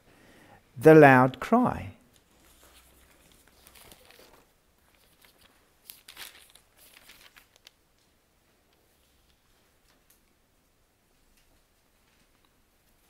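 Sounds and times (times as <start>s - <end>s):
paper pages rustling: 2.1s - 8.2s.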